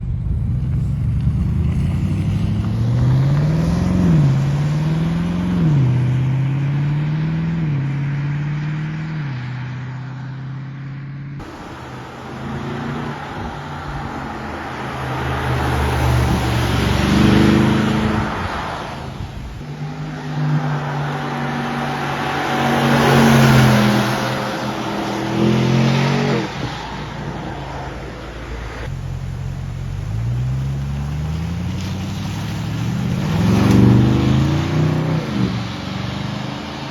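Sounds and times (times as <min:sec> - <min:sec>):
car engine revving: 0:00.0 - 0:09.7, 0:11.0 - 0:36.9
rushing noise: 0:11.4 - 0:36.9.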